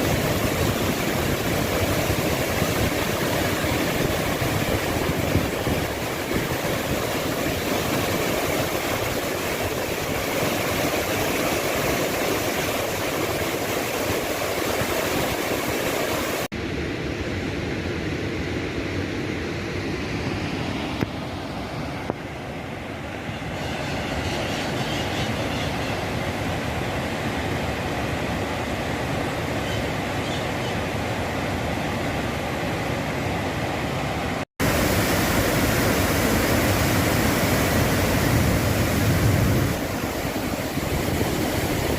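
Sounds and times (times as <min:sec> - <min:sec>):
waterfall rushing: 0:00.0 - 0:16.5, 0:33.2 - 0:41.9.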